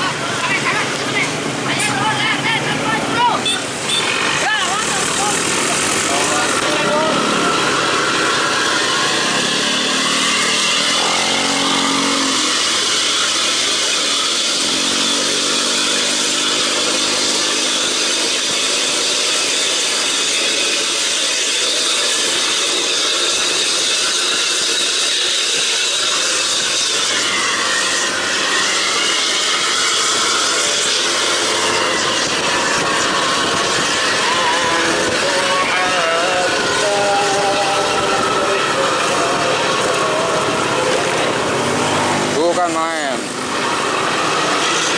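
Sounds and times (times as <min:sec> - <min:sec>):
bus engine and exhaust: 0:00.0 - 0:44.9
road noise: 0:00.0 - 0:44.9
heavy wind noise: 0:31.7 - 0:42.2.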